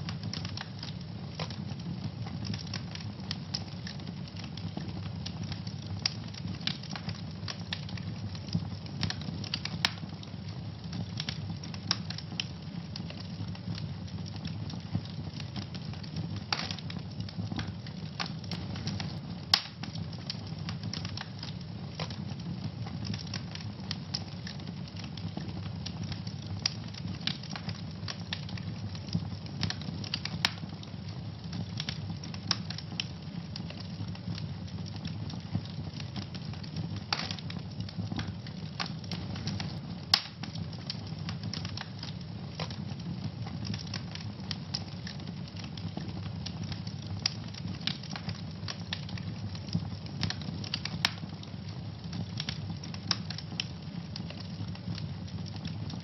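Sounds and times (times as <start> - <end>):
fire crackling: 0.0 - 56.0
sharp fire pops: 15.1 - 30.7, 35.8 - 42.8.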